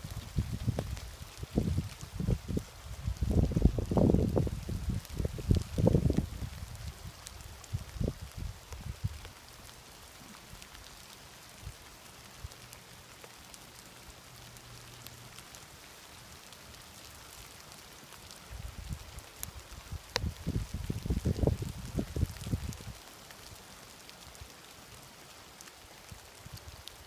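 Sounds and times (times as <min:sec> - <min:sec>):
wind buffeting microphone: 0:00.0 - 0:09.2, 0:18.5 - 0:23.0
steady hiss: 0:00.0 - 0:27.0
small ticks: 0:04.8 - 0:27.0.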